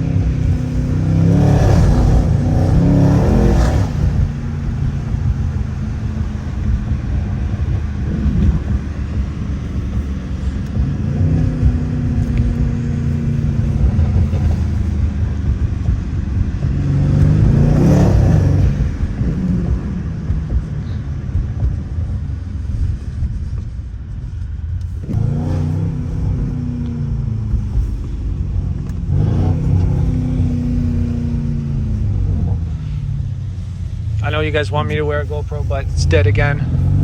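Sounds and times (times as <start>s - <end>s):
car engine accelerating hard: 0.0s - 37.0s.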